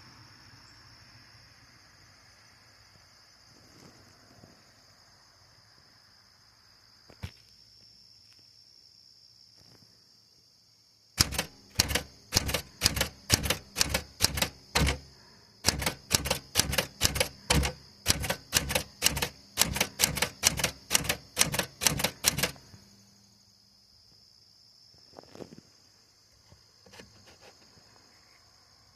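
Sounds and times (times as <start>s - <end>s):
typewriter keystrokes: 11.2s - 22.6s.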